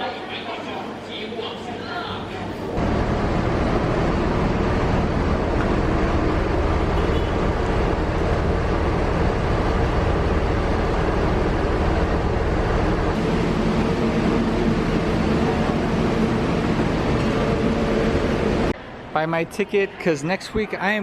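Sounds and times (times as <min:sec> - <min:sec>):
diesel engine running: 0:02.7 - 0:18.8.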